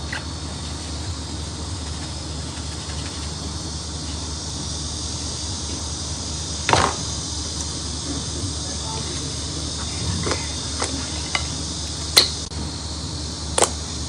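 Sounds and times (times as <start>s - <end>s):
background hiss: 0.0s - 14.0s
low hum: 0.0s - 14.0s.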